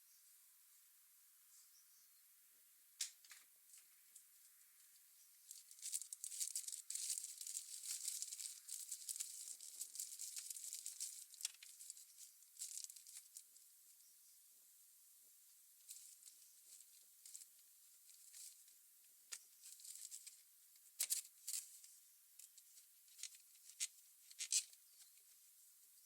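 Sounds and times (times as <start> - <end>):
crinkling and scratching: 3.2 - 13.7, 15.8 - 26.0.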